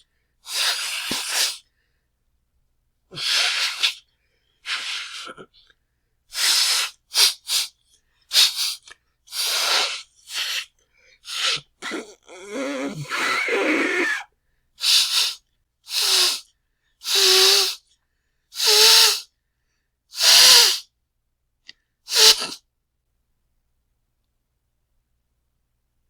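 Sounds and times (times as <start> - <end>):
person blowing nose: 0.4 - 1.6, 3.1 - 4.0, 4.6 - 5.4, 6.3 - 17.8, 18.6 - 19.3, 20.1 - 20.9, 22.1 - 22.6.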